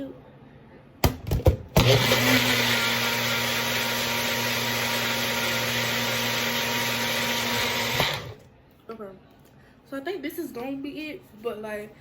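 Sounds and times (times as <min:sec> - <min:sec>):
blender motor running: 0:01.8 - 0:08.5.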